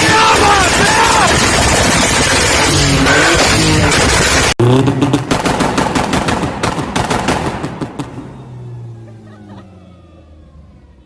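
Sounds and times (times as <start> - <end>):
exhaust pops and bangs: 0.0 - 8.4
car engine revving high: 2.3 - 6.6.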